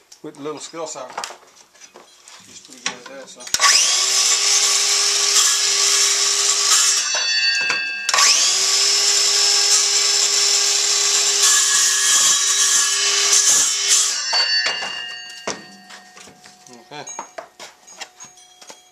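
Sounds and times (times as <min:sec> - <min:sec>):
circular saw cutting wood: 0:03.5 - 0:15.4.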